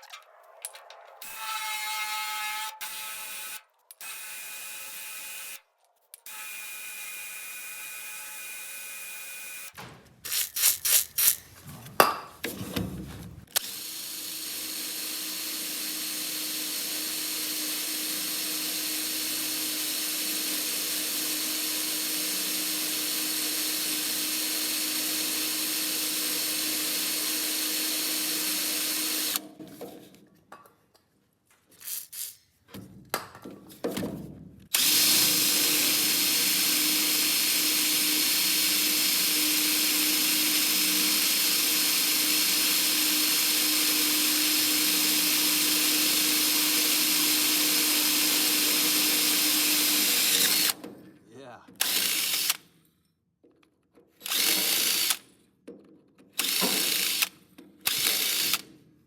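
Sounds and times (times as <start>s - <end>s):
electric drill whining: 1.2s - 5.6s, 6.2s - 11.4s, 13.5s - 29.4s, 34.7s - 50.8s, 51.8s - 52.7s, 54.2s - 55.3s, 56.4s - 58.7s.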